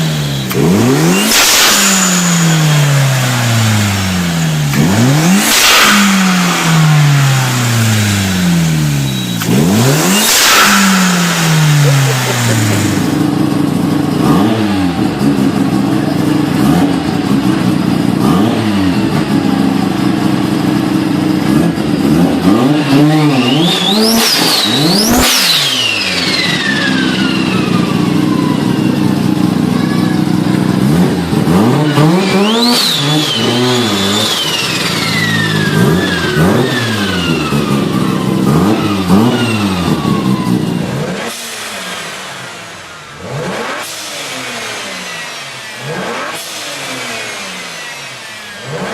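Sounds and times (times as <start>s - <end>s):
car engine revving: 0.0s - 48.9s
sharp rush of air: 0.7s - 13.8s
high turbo whistle: 23.0s - 29.1s, 32.1s - 40.7s.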